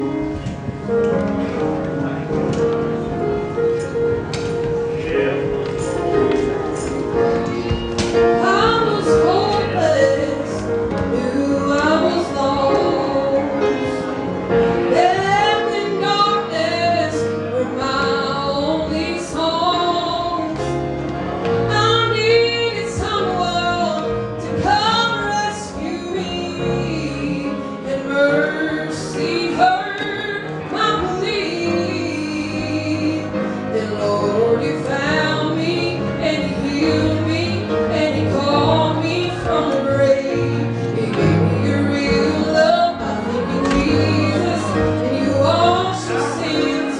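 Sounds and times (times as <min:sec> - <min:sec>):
instrumental accompaniment: 0:00.0 - 0:46.9
woman singing with vibrato: 0:08.3 - 0:14.0, 0:14.8 - 0:20.8, 0:21.7 - 0:46.9.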